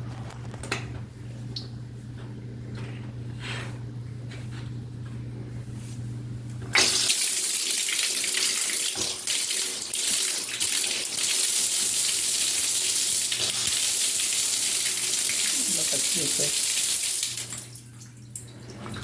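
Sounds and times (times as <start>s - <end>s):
tap water running and splashing: 6.8s - 19.0s.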